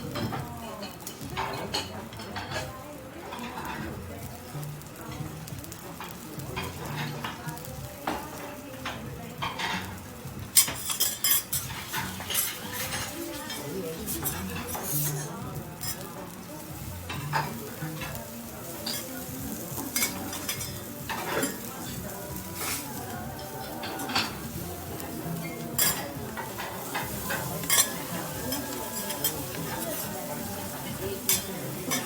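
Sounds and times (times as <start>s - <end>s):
food sizzling on a griddle: 0.0s - 32.0s
metal spatulas scraping and clicking: 10.6s - 16.1s, 22.6s - 32.0s.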